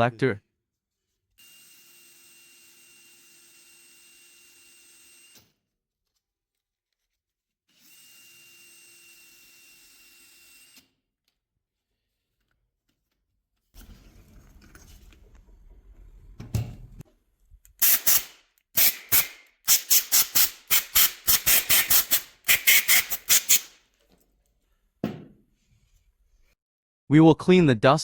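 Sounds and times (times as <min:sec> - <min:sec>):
knock: 0:25.0 - 0:25.4.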